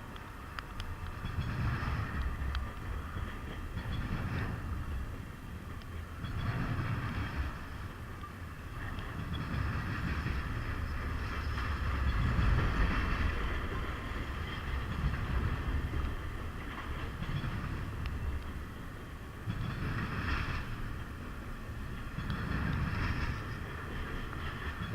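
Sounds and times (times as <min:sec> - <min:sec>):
freight train wheels rumbling: 0:00.0 - 0:24.9.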